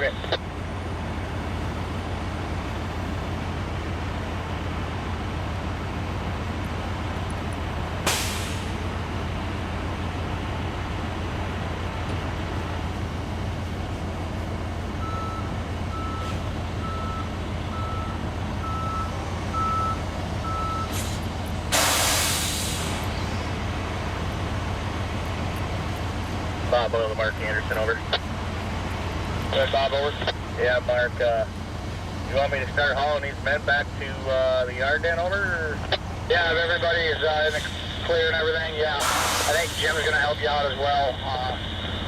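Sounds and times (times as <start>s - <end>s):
truck idling: 0.0s - 42.0s
backup alarm beeping: 15.0s - 21.0s
air hiss: 20.9s - 23.4s, 39.0s - 40.2s.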